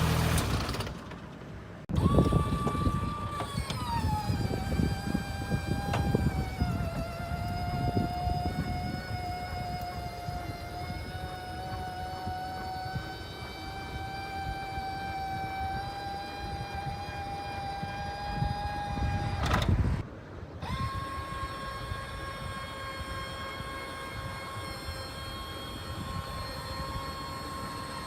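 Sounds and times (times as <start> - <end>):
mower rush: 0.0 - 20.0
lawn mower whining: 0.0 - 28.0.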